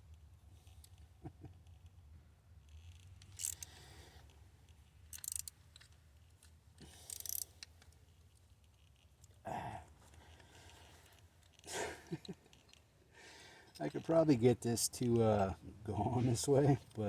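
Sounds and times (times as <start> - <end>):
threaded metal scraping and clicking: 2.7 - 3.8, 4.7 - 9.4.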